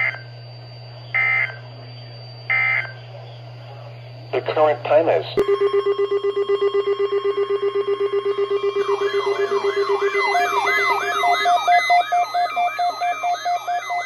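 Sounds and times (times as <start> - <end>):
siren-like sweeping tone: 5.5 - 14.0.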